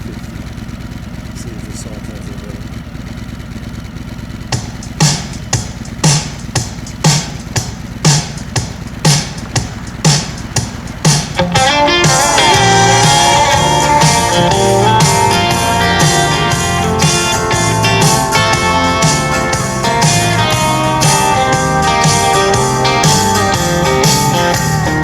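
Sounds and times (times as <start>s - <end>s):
country song with guitar: 11.4s - 25.0s.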